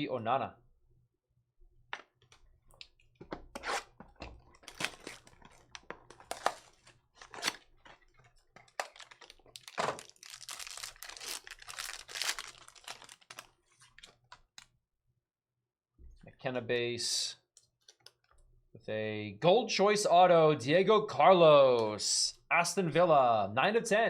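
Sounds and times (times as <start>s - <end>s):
wrapper crinkling: 4.5s - 14.5s
card pack wrapper tearing: 4.6s - 14.4s.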